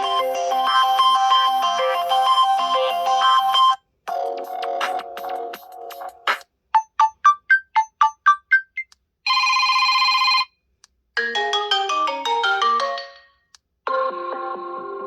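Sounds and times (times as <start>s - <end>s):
electronic phone ring: 9.3s - 10.6s.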